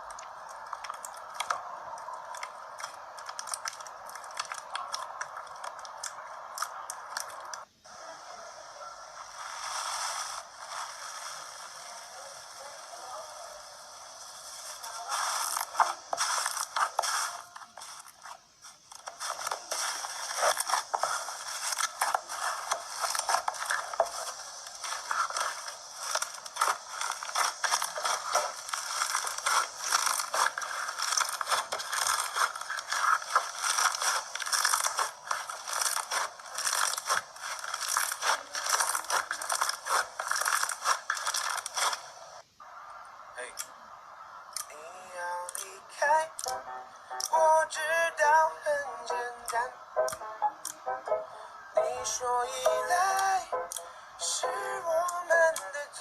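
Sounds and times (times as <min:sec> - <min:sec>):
slime squelching and crackling: 0:00.0 - 0:07.7, 0:14.4 - 0:42.5.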